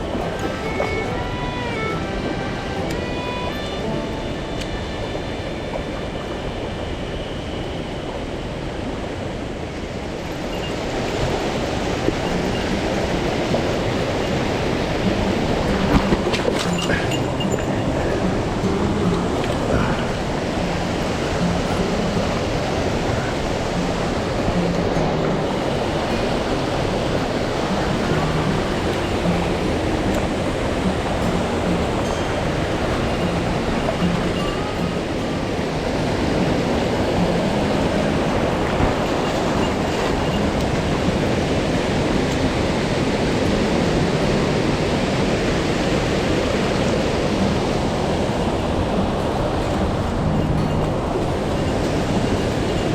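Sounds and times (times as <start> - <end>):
stream rushing over rocks: 0.0 - 52.9.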